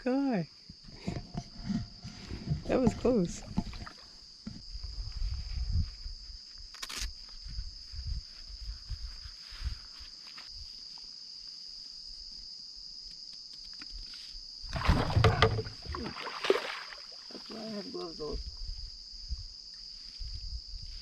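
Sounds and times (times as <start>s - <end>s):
night insects trilling: 0.0s - 21.0s
low thumps and knocks: 14.7s - 16.1s.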